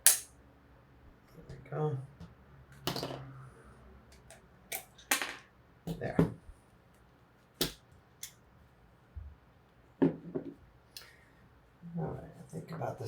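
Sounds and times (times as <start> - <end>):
pliers and metal parts clicking: 0.0 - 0.3.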